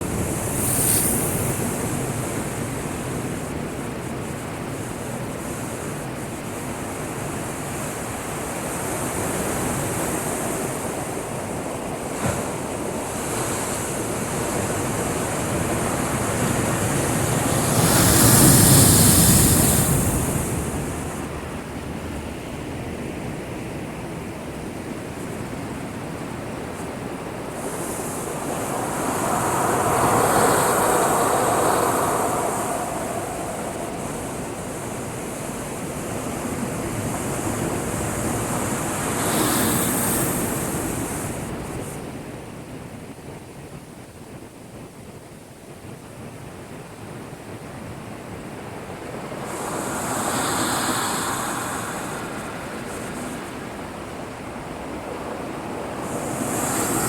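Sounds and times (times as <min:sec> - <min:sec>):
waves breaking against breakwater: 0:49.1 - 0:57.0.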